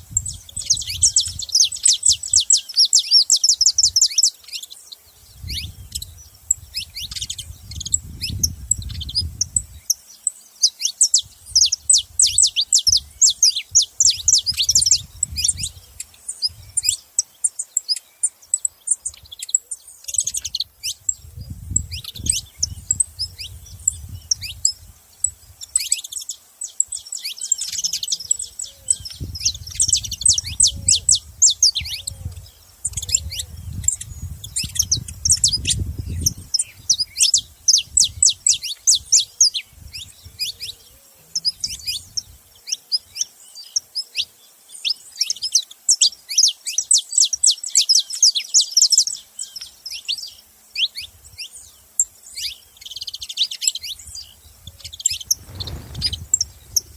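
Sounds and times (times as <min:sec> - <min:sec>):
finch chirps: 0:00.0 - 0:56.9
low rumble: 0:55.3 - 0:56.9.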